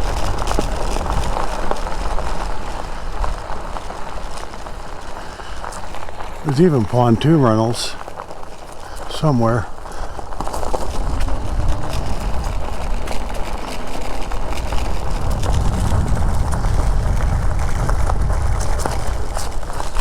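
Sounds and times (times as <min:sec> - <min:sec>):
low rumble of bike ride: 0:00.0 - 0:20.0
wind buffeting microphone: 0:00.0 - 0:20.0
small clicks and rattles: 0:08.0 - 0:20.0.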